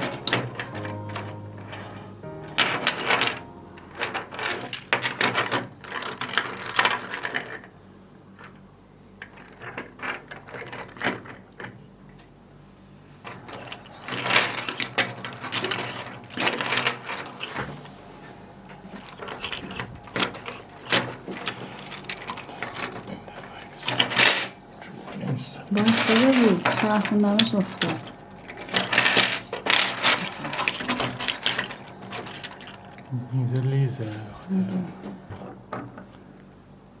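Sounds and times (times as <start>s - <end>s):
steady low hum: 12.4s - 37.0s.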